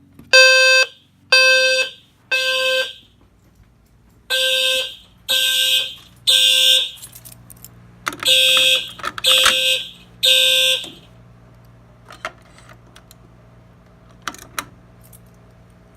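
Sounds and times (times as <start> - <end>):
fire alarm horn blasts: 0.3 - 3.2, 4.3 - 7.2, 8.2 - 11.2.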